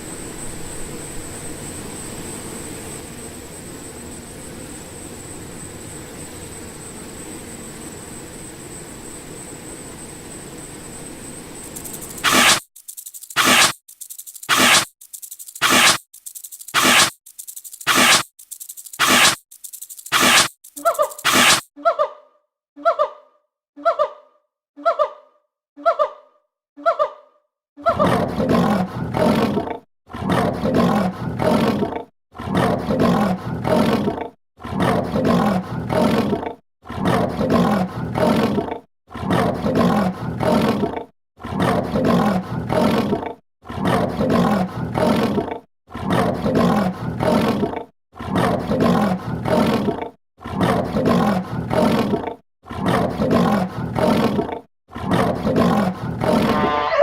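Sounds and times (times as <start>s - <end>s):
rough growling roar: 28.0s - 57.0s.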